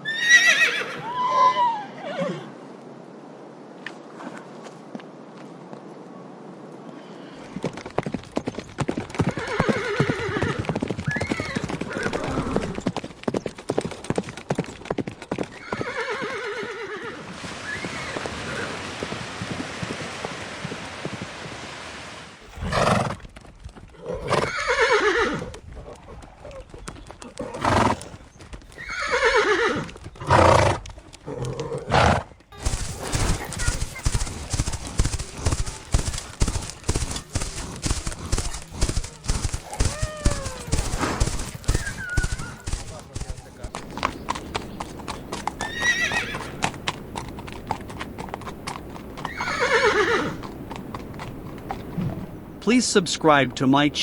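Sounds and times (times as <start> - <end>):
horse whinnying: 0.0 - 2.5, 9.3 - 12.9, 15.5 - 18.7, 22.4 - 23.2, 24.0 - 25.5, 27.4 - 32.3, 39.1 - 42.7, 45.4 - 46.7, 49.2 - 50.5
horse hooves clip-clopping: 3.8 - 6.1, 7.4 - 54.0
horse blowing breath: 22.4 - 23.2, 27.4 - 28.3, 34.6 - 42.8.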